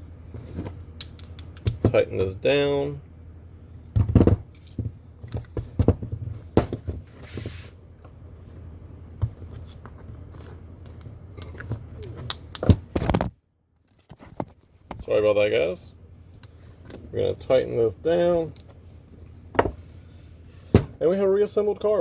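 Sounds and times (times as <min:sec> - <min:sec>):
steady low hum: 0:00.0 - 0:22.0
metal parts clicking and scraping: 0:04.5 - 0:05.5.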